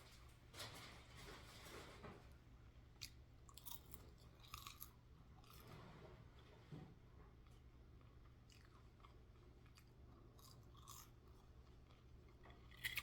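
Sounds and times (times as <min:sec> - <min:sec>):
chewing food: 0:03.0 - 0:05.8, 0:07.4 - 0:13.0.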